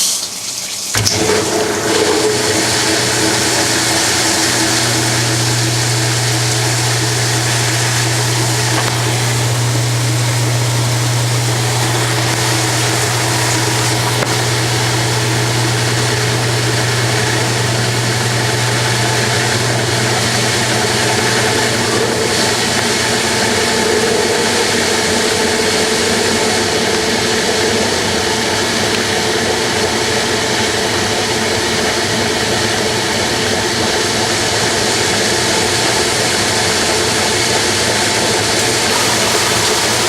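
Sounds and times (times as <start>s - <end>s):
washing machine motor hum: 0.0s - 40.0s
water rushing: 1.0s - 30.7s, 38.6s - 40.0s.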